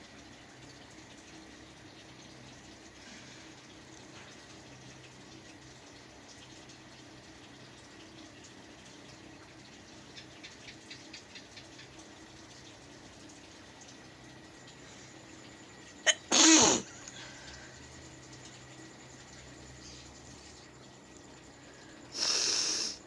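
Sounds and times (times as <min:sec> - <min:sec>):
faint ticks: 0:10.0 - 0:12.1
woman sneezing: 0:16.1 - 0:16.9.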